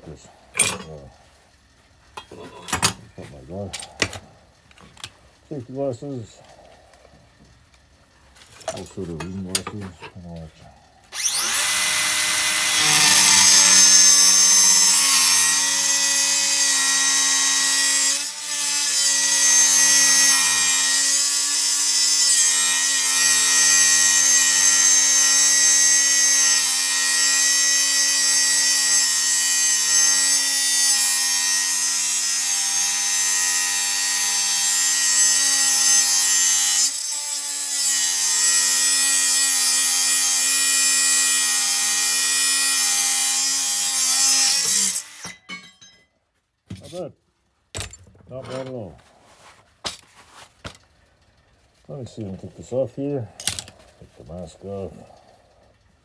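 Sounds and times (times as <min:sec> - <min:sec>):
angle grinder cutting metal: 0:11.1 - 0:46.0.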